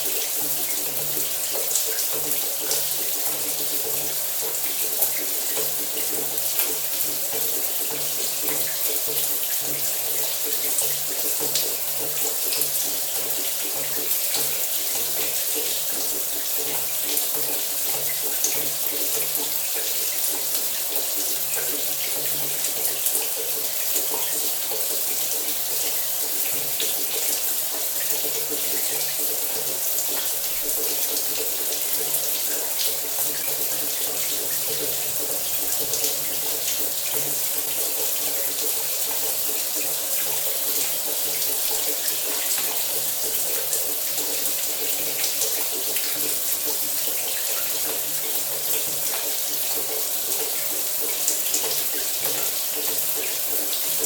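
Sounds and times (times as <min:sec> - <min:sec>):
shower water spraying: 0:15.1 - 0:54.0.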